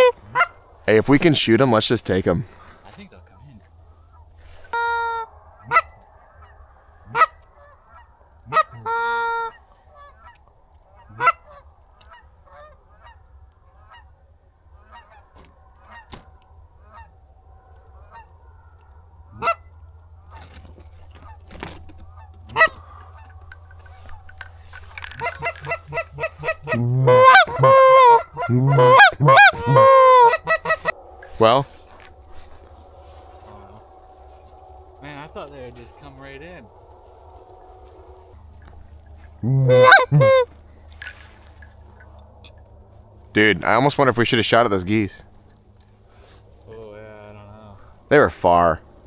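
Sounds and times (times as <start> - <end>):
goose call honks and clucks: 0.0 - 3.0, 3.9 - 17.1, 18.0 - 35.0, 38.6 - 42.4.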